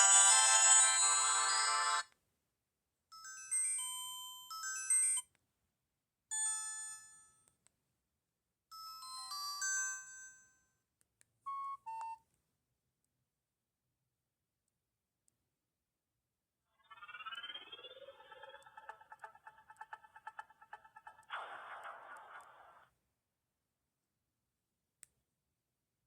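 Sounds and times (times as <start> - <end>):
phone ringtone: 0.0 - 2.0.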